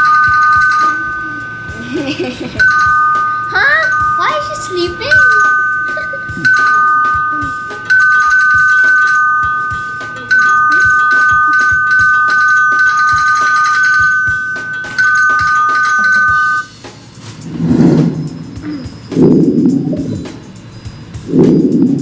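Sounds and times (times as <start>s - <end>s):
two-tone doorbell chime: 0.0s - 16.7s
low rough sound: 17.1s - 22.0s.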